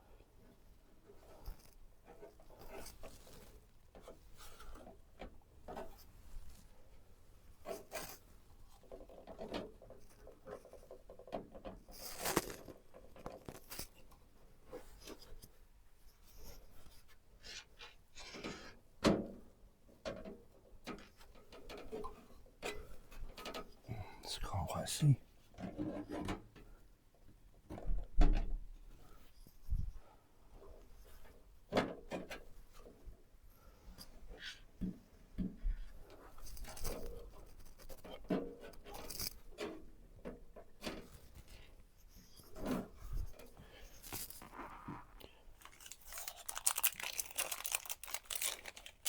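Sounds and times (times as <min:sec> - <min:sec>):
small clicks and scraping: 0:07.6 - 0:18.8, 0:35.9 - 0:49.0.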